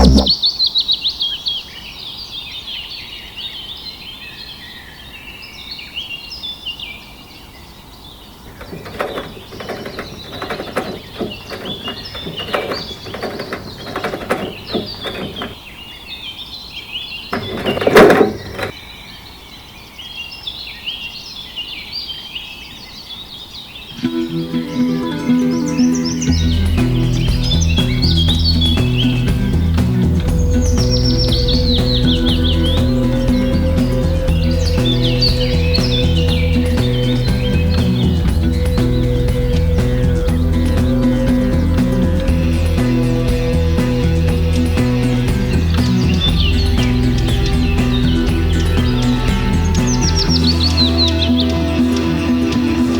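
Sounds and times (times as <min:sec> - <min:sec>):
loud short noise: 0:00.0 - 0:00.4
small birds chirping: 0:00.0 - 0:52.9
irregular knocks and taps: 0:08.5 - 0:15.6, 0:17.3 - 0:18.7.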